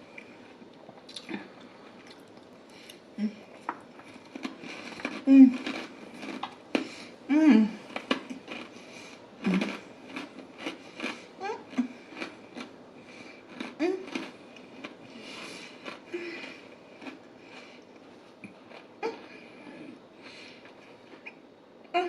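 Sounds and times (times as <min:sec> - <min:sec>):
chewing salad: 0:00.0 - 0:21.4.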